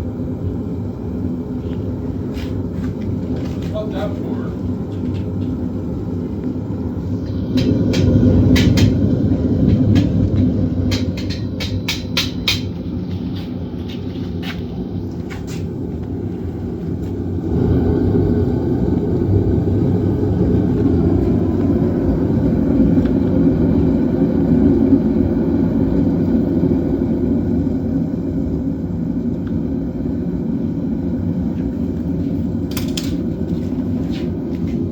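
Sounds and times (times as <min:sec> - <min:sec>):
furnace burner rumbling: 0:00.0 - 0:34.9.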